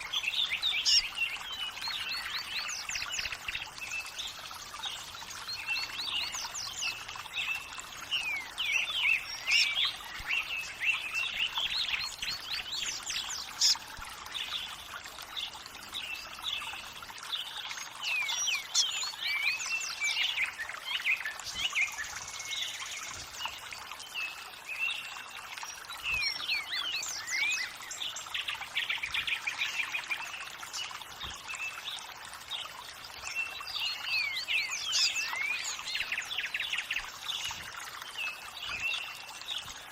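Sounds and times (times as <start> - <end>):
running water: 0.0 - 39.9
birds chirping and calling: 0.1 - 3.6, 5.5 - 14.7.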